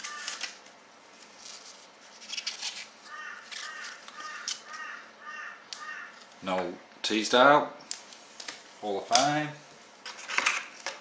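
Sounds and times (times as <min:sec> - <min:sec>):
crow cawing: 0:00.0 - 0:00.4, 0:03.1 - 0:06.3
crinkly foil rustles: 0:00.0 - 0:04.8.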